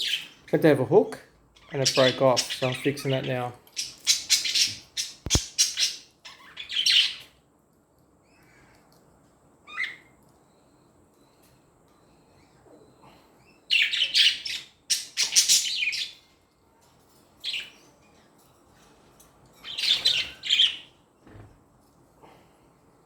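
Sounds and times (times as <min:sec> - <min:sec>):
budgies chirping and chattering: 0:00.0 - 0:00.9, 0:01.6 - 0:07.4, 0:09.7 - 0:10.2, 0:12.4 - 0:16.4, 0:17.4 - 0:18.0, 0:19.6 - 0:21.0.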